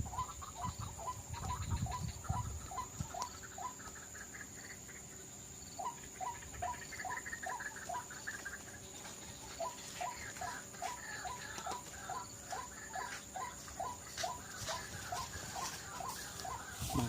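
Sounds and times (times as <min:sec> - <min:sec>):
waterhen calling: 0:05.8 - 0:08.8, 0:09.4 - 0:17.0.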